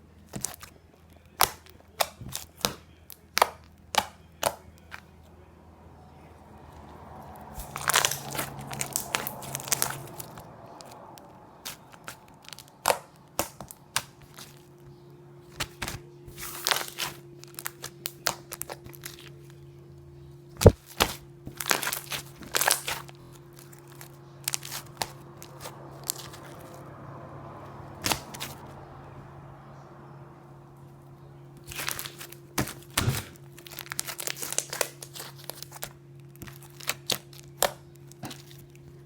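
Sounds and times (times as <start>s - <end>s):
crunchy slime crackling and popping: 0.3s - 5.1s, 6.8s - 14.7s, 15.5s - 19.6s, 20.6s - 26.8s, 28.0s - 28.6s, 31.6s - 39.0s.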